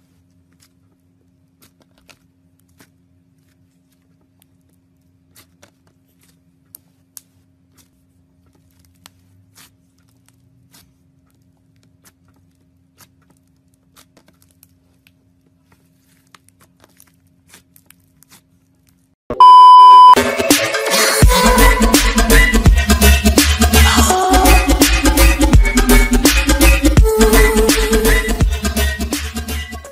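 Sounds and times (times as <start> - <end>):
loud beep tone: 19.3 - 20.2
loud music: 20.1 - 29.9.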